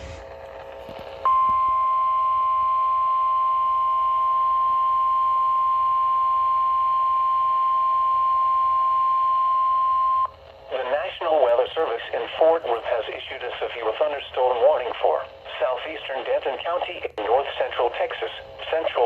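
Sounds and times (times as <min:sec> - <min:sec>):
radio hiss: 0:00.0 - 0:01.2, 0:10.3 - 0:19.0.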